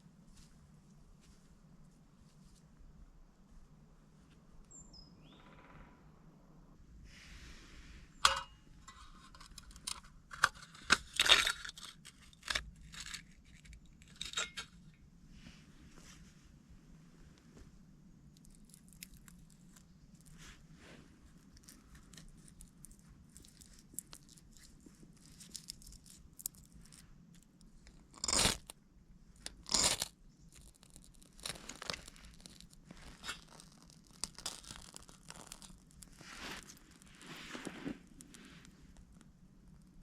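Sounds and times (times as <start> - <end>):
crunching and crackling: 8.2 - 15.0, 18.2 - 28.8, 29.4 - 40.0.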